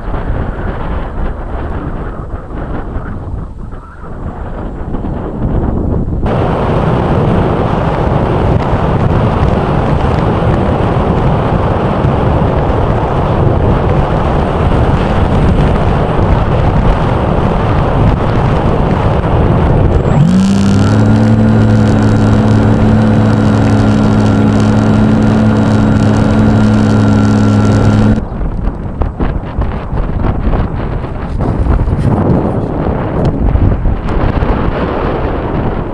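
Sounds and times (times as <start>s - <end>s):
gusty wind on microphone: 0.0s - 35.9s
steady multi-pitch hum: 19.9s - 28.2s.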